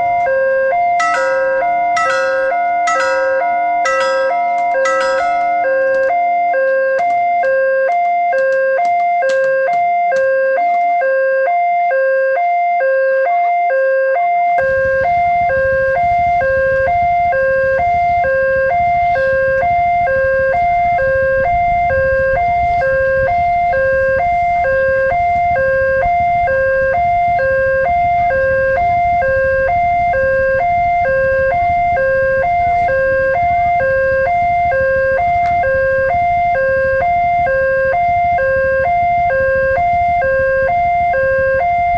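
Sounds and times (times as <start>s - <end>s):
level crossing two-tone alarm: 0.0s - 41.9s
low rumble: 14.6s - 41.9s.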